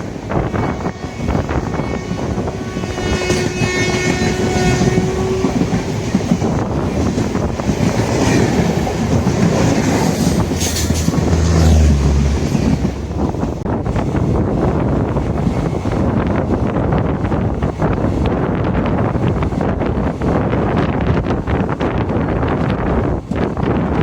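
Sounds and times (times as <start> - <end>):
train rumbling and rattling on track: 0.0 - 24.0
train horn: 0.3 - 5.8.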